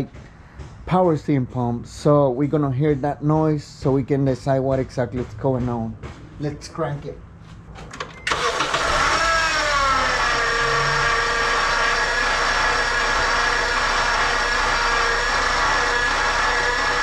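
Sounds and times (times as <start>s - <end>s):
car engine idling: 8.3s - 17.0s.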